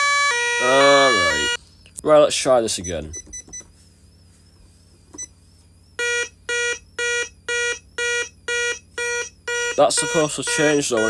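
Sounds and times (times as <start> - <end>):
alarm panel beeping: 0.0 - 1.6, 5.2 - 11.0.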